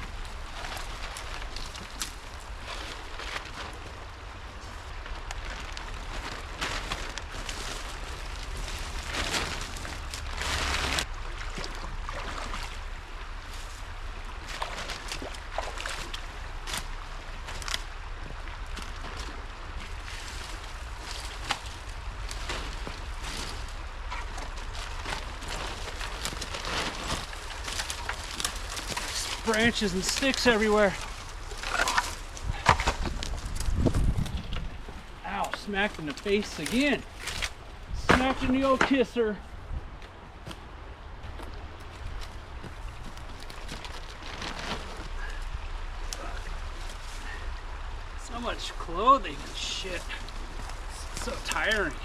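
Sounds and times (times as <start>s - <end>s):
brush and debris rustling: 0.0s - 52.0s
steady low rumble: 0.0s - 52.0s
wind rumble on microphone: 30.7s - 35.3s, 37.0s - 38.6s, 39.4s - 48.2s.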